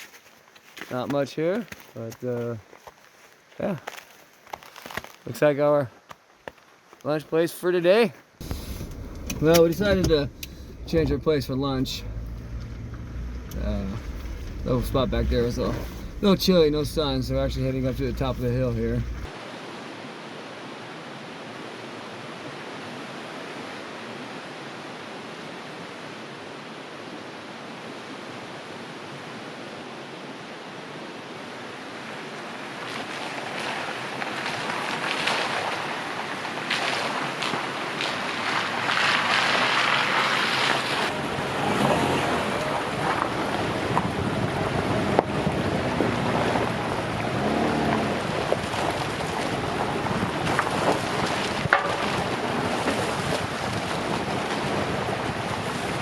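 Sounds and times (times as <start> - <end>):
wind and road noise: 0.0 - 56.0
engine rising and falling: 8.4 - 19.3, 39.2 - 48.6.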